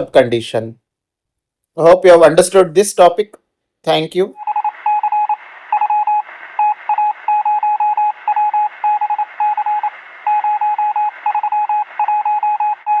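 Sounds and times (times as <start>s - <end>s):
radio hiss: 4.4s - 12.5s
morse code beeping: 4.4s - 13.0s.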